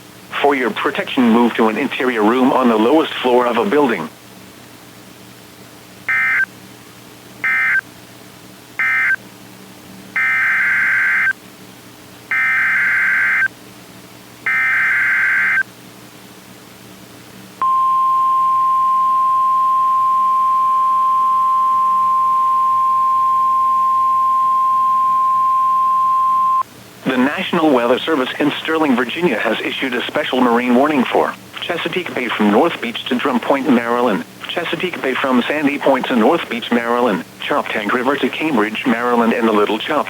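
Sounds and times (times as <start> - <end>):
data bursts: 6.1 - 6.4, 14.5 - 15.6
steady warning alarm tone: 6.1 - 6.5, 7.4 - 7.8, 8.8 - 9.2, 10.2 - 11.4, 12.3 - 13.5, 14.5 - 15.6, 17.6 - 26.6.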